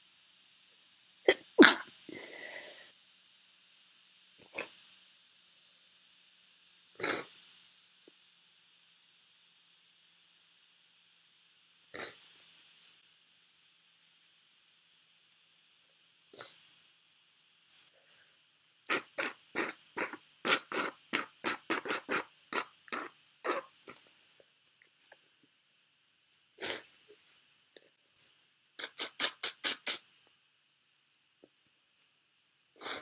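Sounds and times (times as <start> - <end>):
woman sniffling: 32.8 - 33.0.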